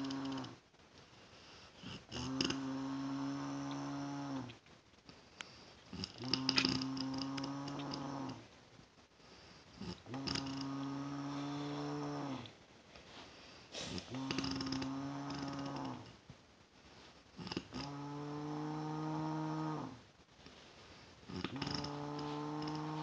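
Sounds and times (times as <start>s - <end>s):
low snoring: 0.0s - 0.6s, 1.8s - 4.6s, 5.9s - 8.5s, 9.8s - 12.6s, 13.8s - 16.2s, 17.4s - 20.0s, 21.3s - 23.0s
quiet in-breaths: 1.0s - 2.1s, 5.1s - 6.2s, 9.1s - 10.0s, 10.6s - 14.8s, 20.4s - 23.0s.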